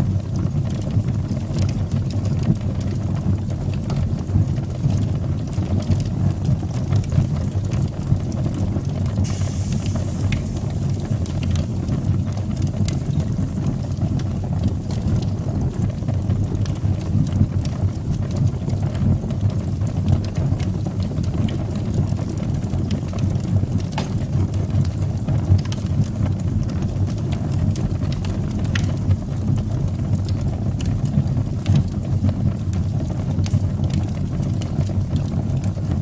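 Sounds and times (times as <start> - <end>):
fire crackling and popping: 0.0 - 36.0
fire rumbling: 0.0 - 36.0
brief hiss: 9.2 - 12.0.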